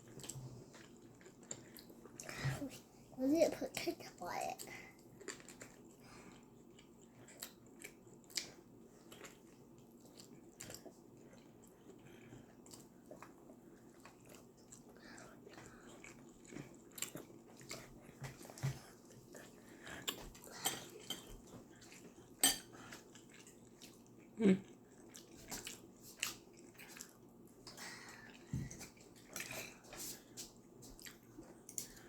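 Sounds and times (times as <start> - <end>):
faint steady hum: 0.0 - 32.0
chewing and biting: 5.1 - 29.8.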